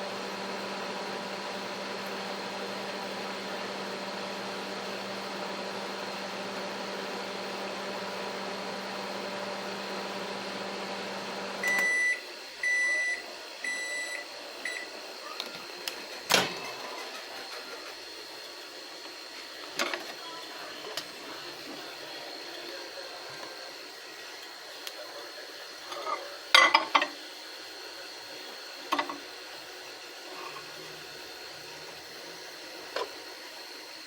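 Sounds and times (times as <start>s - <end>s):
microwave oven humming: 0.0s - 34.0s
microwave beeps: 11.6s - 15.0s.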